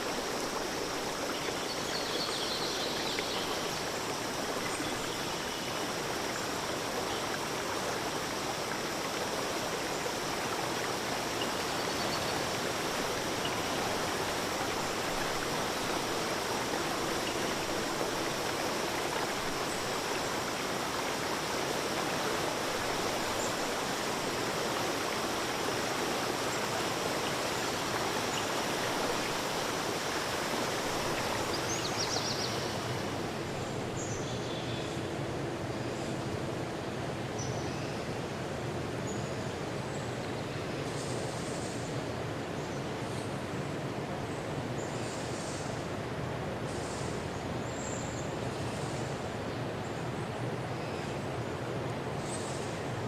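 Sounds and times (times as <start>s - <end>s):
stream water running: 0.0s - 53.0s.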